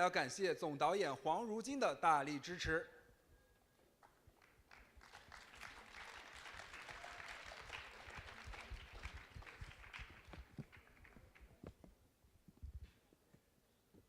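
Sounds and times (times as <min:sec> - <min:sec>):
audience applauding: 0:04.4 - 0:11.7.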